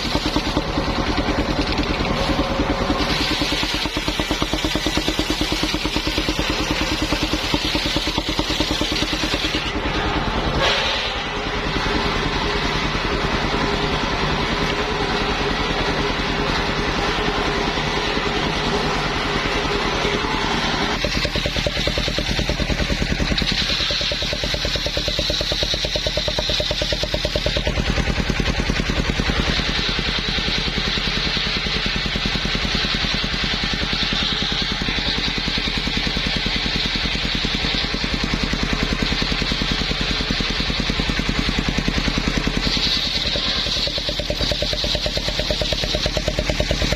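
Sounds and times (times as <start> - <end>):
engine-driven circular saw running: 0.0 - 46.9.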